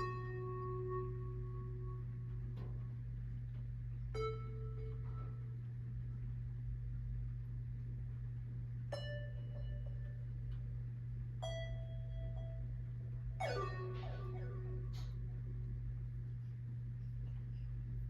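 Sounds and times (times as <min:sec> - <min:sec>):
steady low hum: 0:00.0 - 0:18.0
bell-like notes ringing: 0:13.4 - 0:15.2.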